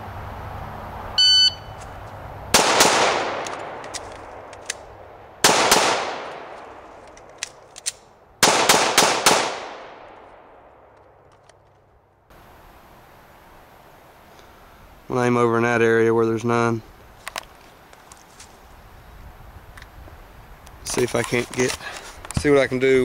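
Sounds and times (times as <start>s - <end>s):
shot timer beep: 1.2s - 1.8s
pistol shots with echo: 2.5s - 4.5s, 5.4s - 6.8s, 8.4s - 10.8s.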